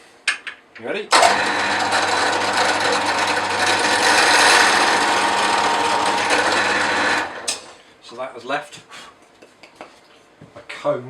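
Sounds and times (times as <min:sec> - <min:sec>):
power drill countersinking wood: 0:01.1 - 0:07.8.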